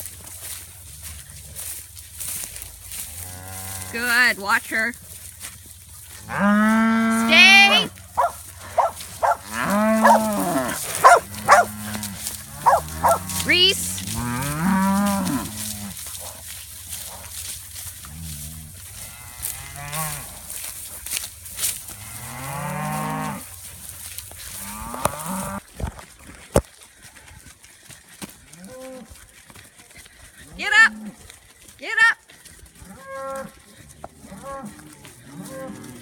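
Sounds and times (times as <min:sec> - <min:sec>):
cows and calves mooing: 0:00.4 - 0:04.9, 0:06.0 - 0:20.7, 0:21.6 - 0:23.7, 0:24.4 - 0:25.6, 0:28.5 - 0:29.1, 0:32.7 - 0:36.0.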